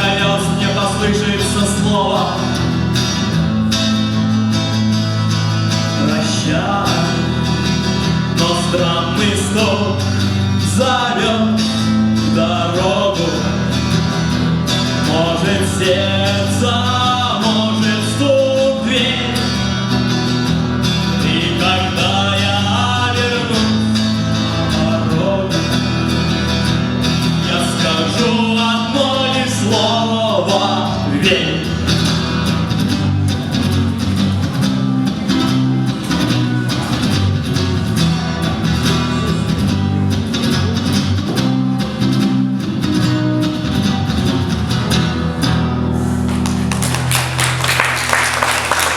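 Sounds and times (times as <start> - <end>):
bass line: 0.0 - 48.9
strummed guitar: 0.0 - 48.9
audience applause: 46.0 - 48.9.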